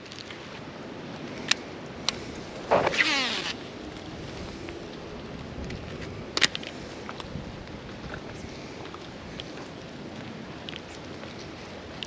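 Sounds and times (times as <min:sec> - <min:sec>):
fishing line whirring off reel: 0:02.7 - 0:03.7.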